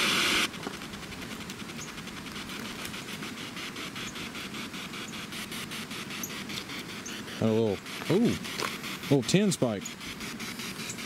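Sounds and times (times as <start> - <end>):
fast faint ticking and crackling: 0.5 - 11.0.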